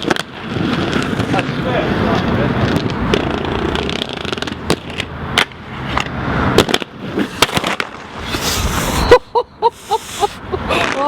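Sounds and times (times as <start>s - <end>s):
skate frames clacking: 0.0s - 9.0s
inline skates rolling on pavement: 0.0s - 9.2s.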